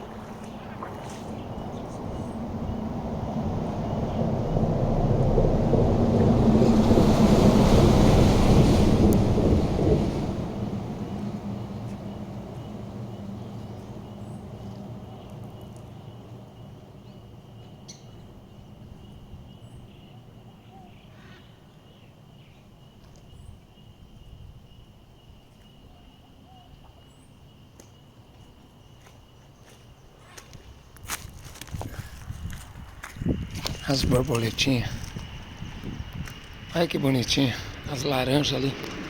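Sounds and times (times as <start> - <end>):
low rumble: 0.0 - 17.3, 32.2 - 39.0
insect drone: 0.0 - 39.0
faint bird chirps: 12.6 - 28.0.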